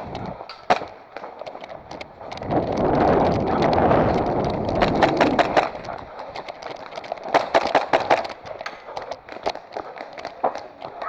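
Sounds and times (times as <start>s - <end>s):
airsoft guns firing: 0.5s - 1.2s, 7.3s - 8.4s.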